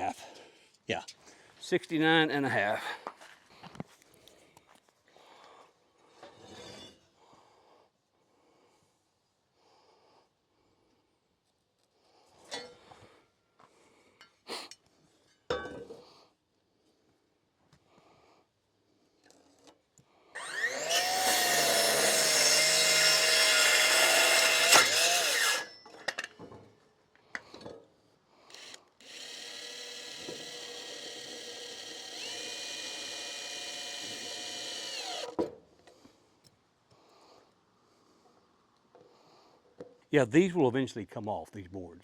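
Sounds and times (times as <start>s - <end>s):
drill running: 20.4s - 25.8s, 28.5s - 35.4s
power saw cutting a board: 20.4s - 25.8s, 28.5s - 35.4s.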